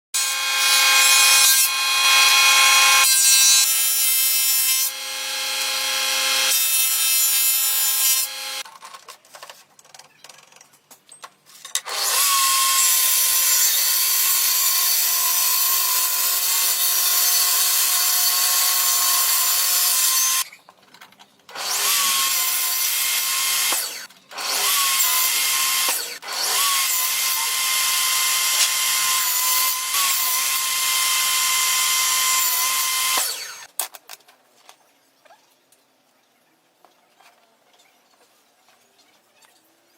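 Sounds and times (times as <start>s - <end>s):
power tool running on wood: 7.5s - 8.6s.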